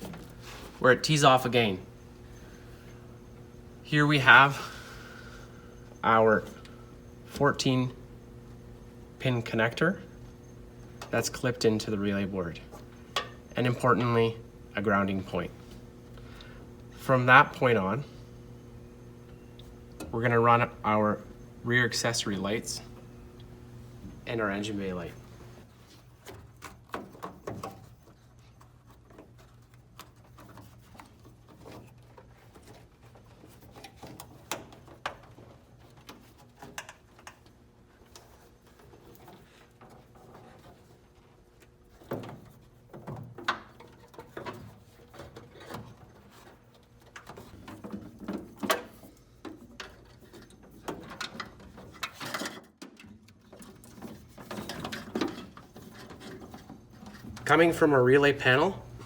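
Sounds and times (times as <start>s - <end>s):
faint steady hum: 0.0s - 27.8s, 53.5s - 59.0s.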